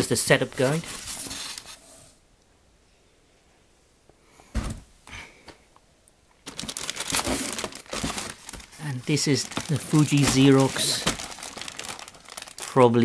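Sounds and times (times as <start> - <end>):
crinkling of wrapping: 0.4 - 1.8, 6.4 - 13.0
soft thump and rustle: 4.5 - 4.9.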